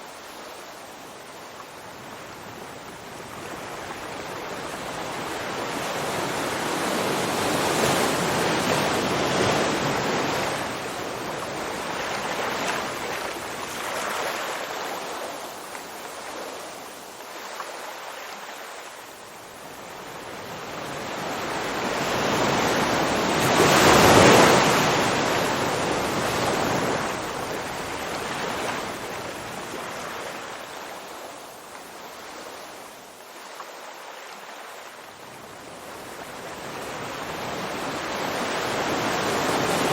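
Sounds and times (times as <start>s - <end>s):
ocean waves breaking: 21.0s - 30.6s.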